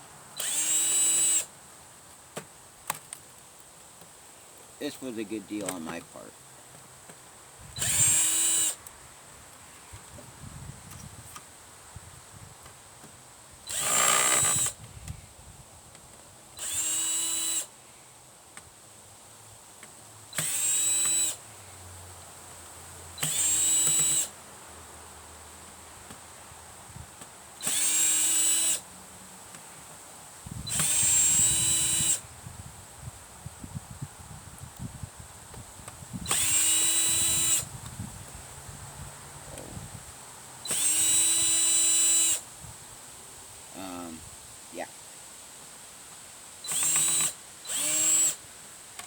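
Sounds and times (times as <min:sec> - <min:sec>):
power drill motor whining: 0:00.4 - 0:01.5, 0:07.8 - 0:08.8, 0:13.7 - 0:14.8, 0:16.6 - 0:17.7, 0:20.4 - 0:21.4, 0:23.2 - 0:24.3, 0:27.6 - 0:28.8, 0:30.7 - 0:32.2, 0:36.3 - 0:37.7, 0:40.7 - 0:42.4, 0:46.6 - 0:48.4.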